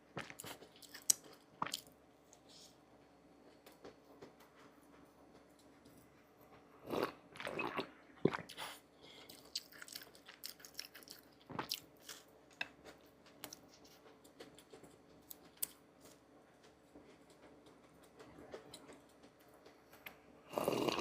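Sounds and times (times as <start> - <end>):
food crunching: 0.0 - 2.4, 6.8 - 21.0.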